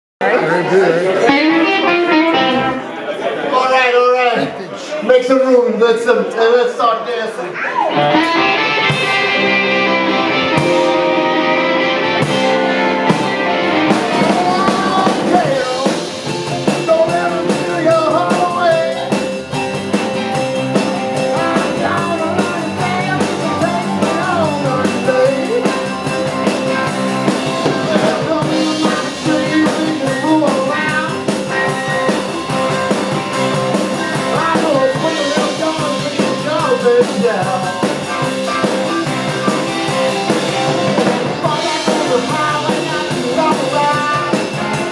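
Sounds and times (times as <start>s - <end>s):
drums: 0.2s - 2.9s, 7.7s - 44.9s
guitar: 0.2s - 4.8s, 7.4s - 44.9s
lead vocal singing: 12.3s - 44.9s.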